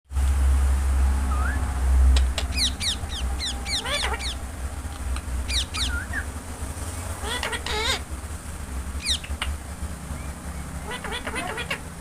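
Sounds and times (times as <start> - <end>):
loud low rumble: 0.4 - 11.0
parakeet chirping: 2.4 - 4.6, 5.4 - 6.3, 7.2 - 8.1, 9.0 - 12.0.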